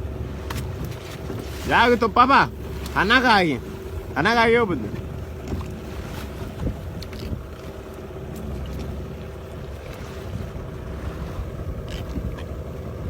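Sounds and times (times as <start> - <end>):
steady low hum: 0.0 - 13.0
water moving around boat: 0.0 - 13.0
wind on microphone: 5.0 - 7.7, 9.8 - 13.0.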